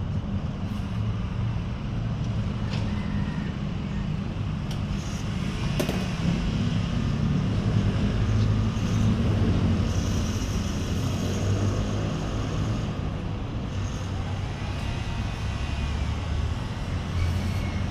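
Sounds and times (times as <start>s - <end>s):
airplane engines rumbling: 0.0s - 17.9s.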